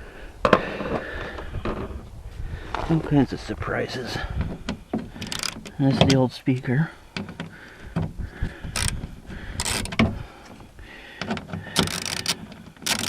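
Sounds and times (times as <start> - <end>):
clicks and rattles of speaker removal: 4.4 - 9.0, 9.6 - 13.0.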